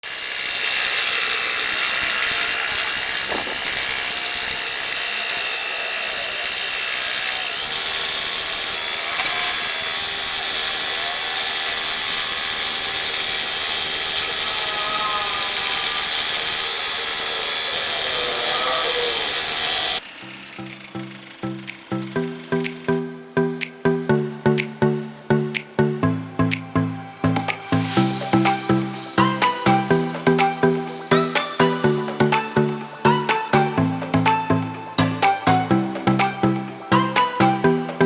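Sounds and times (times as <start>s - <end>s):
electric drill motor whining: 0.0s - 23.0s.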